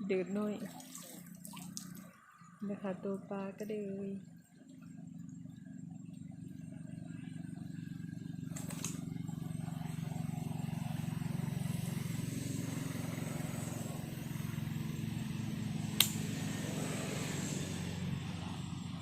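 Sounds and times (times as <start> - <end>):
engine humming: 0.0 - 19.0
sharp click: 16.0 - 16.2.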